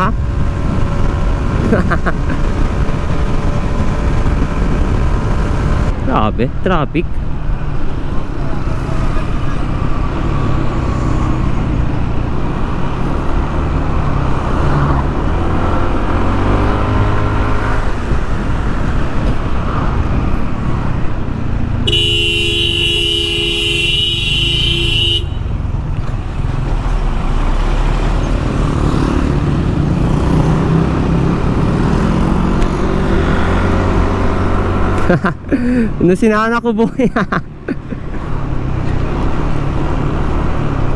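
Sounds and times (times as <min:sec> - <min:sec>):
wind and road noise: 0:00.0 - 0:40.9
vehicle horn: 0:21.8 - 0:25.5.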